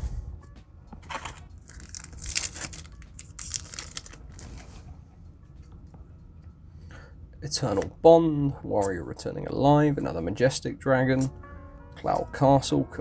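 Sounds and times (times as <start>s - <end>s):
foil wrapper tearing and crinkling: 1.2s - 4.8s.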